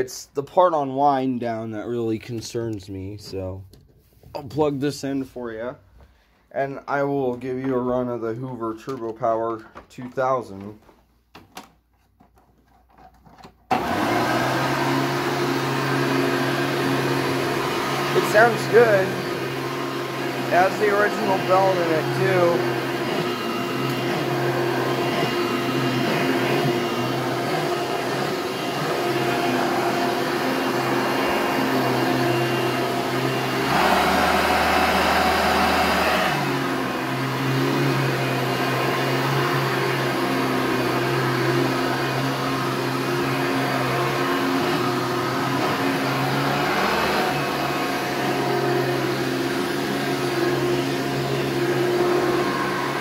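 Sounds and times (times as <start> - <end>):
vacuum cleaner running: 13.7 - 53.0.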